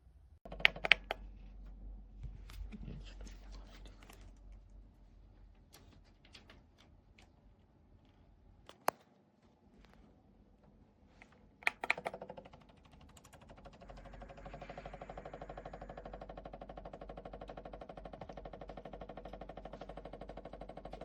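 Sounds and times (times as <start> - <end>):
plastic clicks and taps: 0.5 - 1.2.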